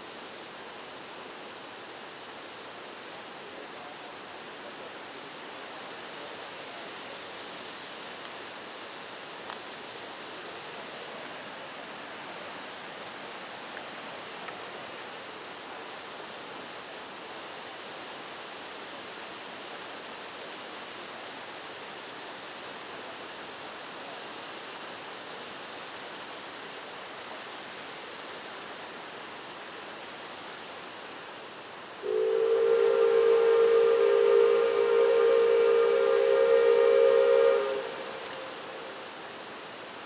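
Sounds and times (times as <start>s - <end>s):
steady rushing hiss: 0.0s - 40.0s
steam whistle blowing: 32.0s - 39.1s.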